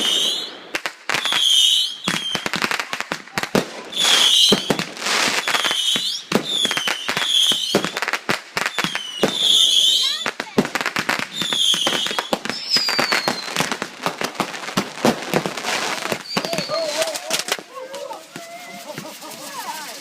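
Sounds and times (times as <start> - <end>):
fireworks bangs and crackles: 0.0 - 20.0
whistling fireworks shells: 11.4 - 13.7, 16.1 - 17.6.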